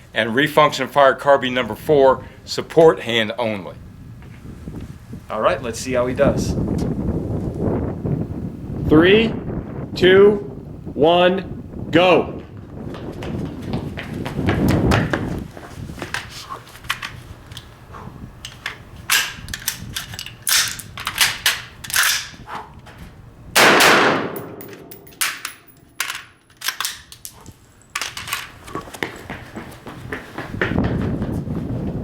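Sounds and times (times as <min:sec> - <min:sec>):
metallic clacks of rifle handling: 0:18.4 - 0:22.4, 0:24.3 - 0:28.5
loud gunshot: 0:23.6 - 0:25.0.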